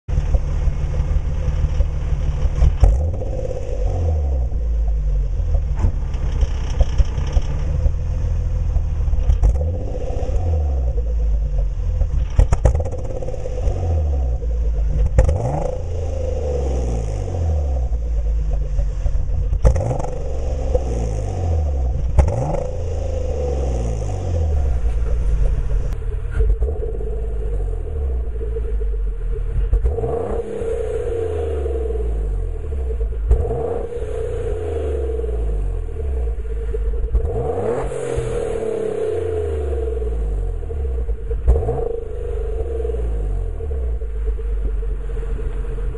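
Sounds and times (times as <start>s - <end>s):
car engine revving: 0.1s - 45.9s
exhaust cracks: 0.1s - 45.9s.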